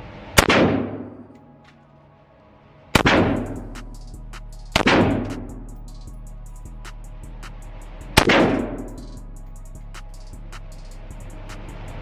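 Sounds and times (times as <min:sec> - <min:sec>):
gunshots echoing indoors: 0:00.4 - 0:01.4, 0:03.0 - 0:03.6.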